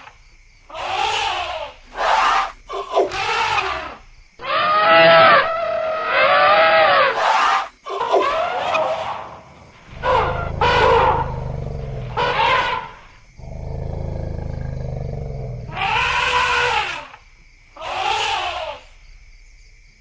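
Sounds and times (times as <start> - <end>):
elephants trumpeting: 4.4 - 17.2
low elephant rumble: 8.8 - 17.2.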